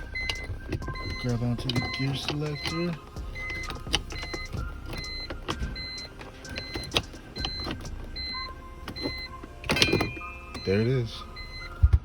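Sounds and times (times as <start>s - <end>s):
clicks and knocks of car shifter parts: 0.0s - 10.8s.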